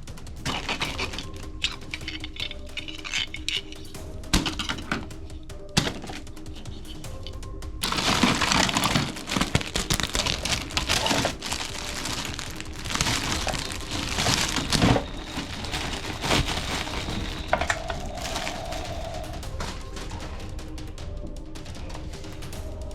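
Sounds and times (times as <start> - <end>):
crinkling and rustling: 0.4 - 5.1, 5.8 - 7.0, 7.8 - 19.8.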